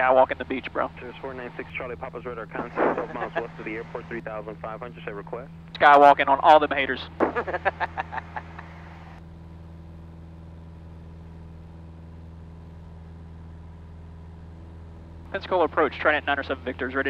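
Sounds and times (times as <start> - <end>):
person speaking: 0.0 - 5.4
airplane engine droning: 0.0 - 17.0.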